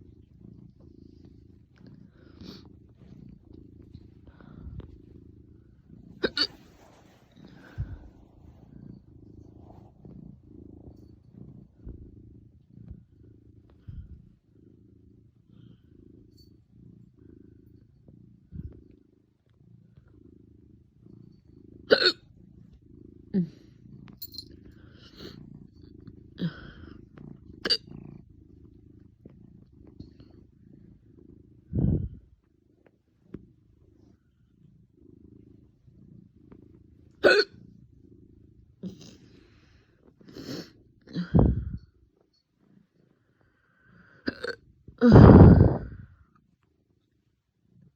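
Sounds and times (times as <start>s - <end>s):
cat purring: 0.0s - 47.9s
cat hiccups: 6.2s - 6.6s, 21.9s - 22.2s, 37.2s - 37.6s.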